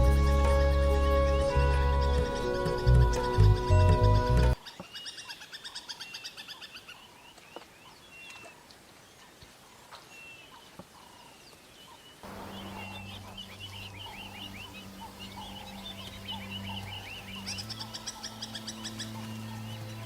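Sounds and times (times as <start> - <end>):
wild birds chirping and whistling: 0.0 - 20.0
steady low hum: 12.2 - 20.0.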